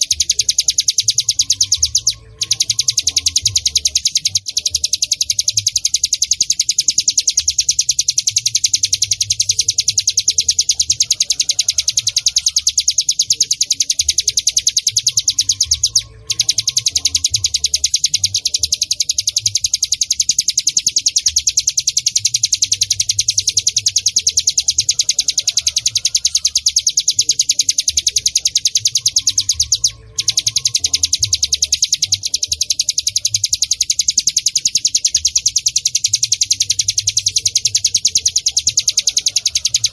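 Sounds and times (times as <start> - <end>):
bird chattering trill: 0.0 - 39.9.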